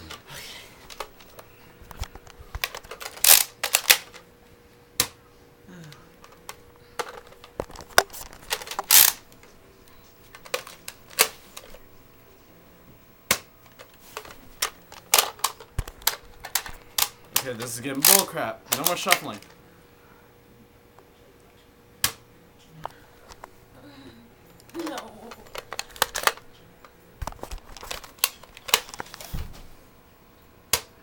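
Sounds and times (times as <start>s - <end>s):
plastic toy blaster clicks: 2.6s - 4.2s, 8.7s - 9.2s, 18.0s - 19.4s.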